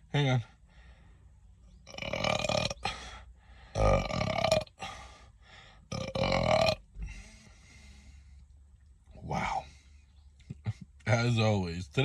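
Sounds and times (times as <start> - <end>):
man burping loudly: 1.8 - 5.1, 5.9 - 7.1.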